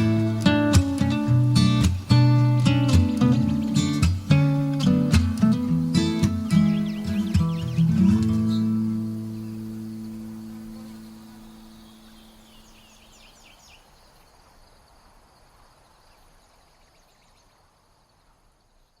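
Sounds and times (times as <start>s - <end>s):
acoustic guitar chord: 0.0s - 12.7s
bird chirps: 0.0s - 14.9s, 15.8s - 19.0s
insect chorus: 0.0s - 19.0s.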